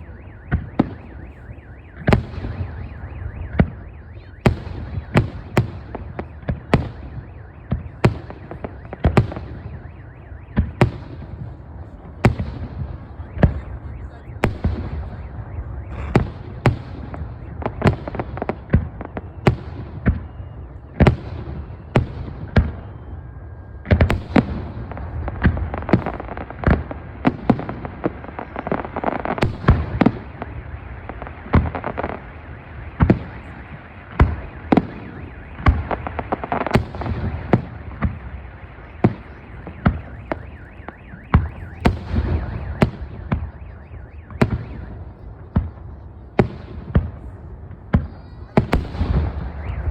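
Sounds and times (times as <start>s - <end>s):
fireworks bangs: 0.0s - 49.9s
fireworks crackle: 10.6s - 43.7s, 44.3s - 49.9s.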